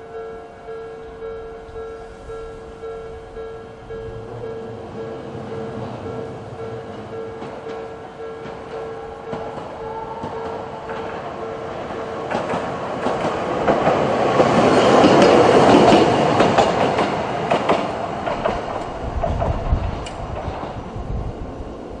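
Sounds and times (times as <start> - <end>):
level crossing alarm: 0.0 - 12.5
tram wheel and rail noise: 0.0 - 22.0
wheels clacking over rail joints: 2.8 - 20.9.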